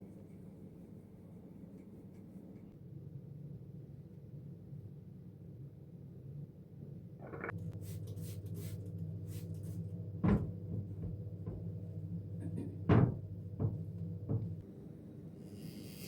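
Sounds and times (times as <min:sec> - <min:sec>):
steady low hum: 0:03.4 - 0:16.0
cupboard doors knocking shut: 0:12.9 - 0:14.6.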